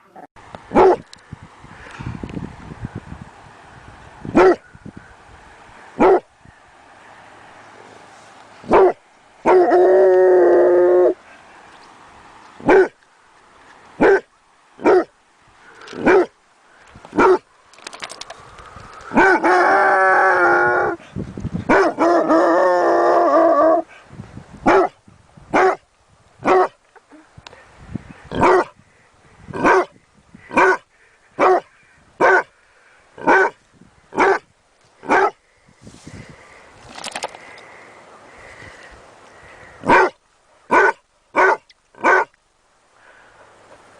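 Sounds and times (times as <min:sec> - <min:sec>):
dog barking: 0:00.7 - 0:01.0, 0:04.4 - 0:04.6, 0:06.0 - 0:06.3, 0:08.7 - 0:09.8, 0:12.6 - 0:13.0, 0:14.0 - 0:15.1, 0:16.0 - 0:16.3, 0:17.2 - 0:17.4, 0:21.7 - 0:22.2, 0:24.7 - 0:25.0, 0:25.6 - 0:25.8, 0:26.4 - 0:26.8, 0:28.4 - 0:28.7, 0:29.6 - 0:29.9, 0:30.5 - 0:30.8, 0:31.4 - 0:32.5, 0:33.2 - 0:33.6, 0:34.2 - 0:34.4, 0:35.0 - 0:35.4, 0:39.9 - 0:42.3.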